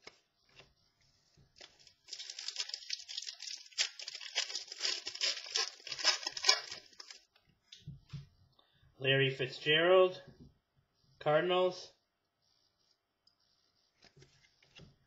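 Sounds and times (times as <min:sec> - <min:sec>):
cards and plastic packaging crinkling: 0:01.6 - 0:07.3.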